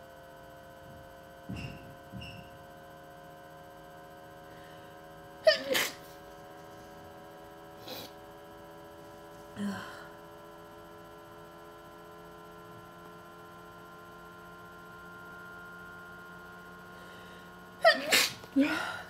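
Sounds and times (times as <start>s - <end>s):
steady electrical hum: 0.0s - 19.0s
person sneezing: 5.5s - 6.1s, 7.8s - 8.2s, 17.8s - 19.0s.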